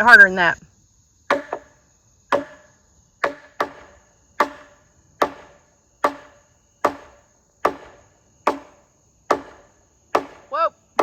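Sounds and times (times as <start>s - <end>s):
hammer blows on timber beam: 1.3s - 11.0s.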